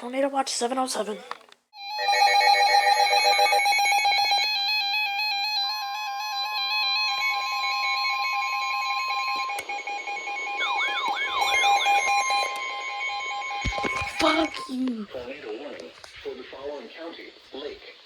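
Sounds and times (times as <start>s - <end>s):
steady alarm tone: 1.8s - 14.8s
warbling pitch sweeps: 8.4s - 14.2s
pulsing beep: 8.4s - 14.8s.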